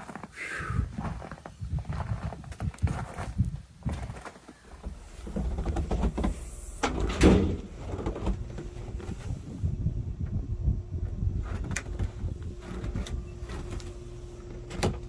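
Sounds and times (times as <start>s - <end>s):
footsteps crunching through snow: 0.9s - 6.6s.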